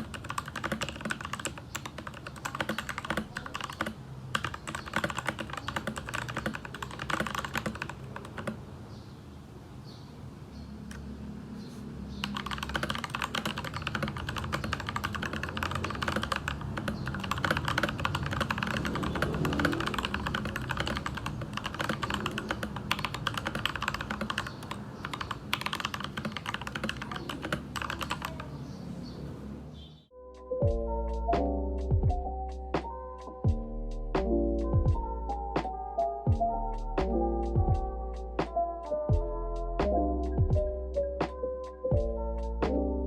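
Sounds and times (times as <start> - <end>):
mechanical keyboard typing: 0.0 - 8.6, 12.2 - 28.5.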